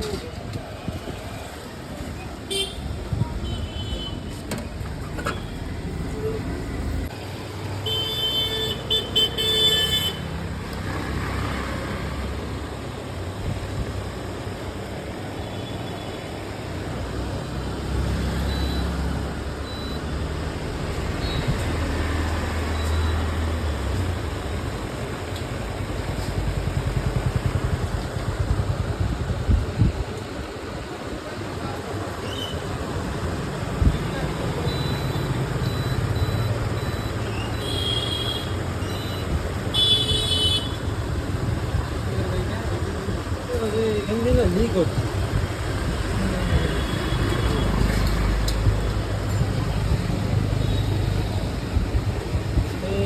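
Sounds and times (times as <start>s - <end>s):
road traffic: 0.0s - 53.0s
vehicle horn tooting: 37.6s - 38.6s, 39.7s - 40.9s.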